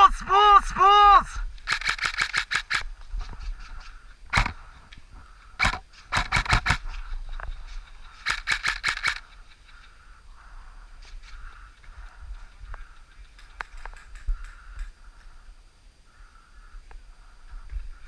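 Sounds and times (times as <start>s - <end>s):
airsoft guns firing: 1.6s - 2.9s, 4.3s - 4.6s, 5.6s - 6.8s, 8.2s - 9.2s.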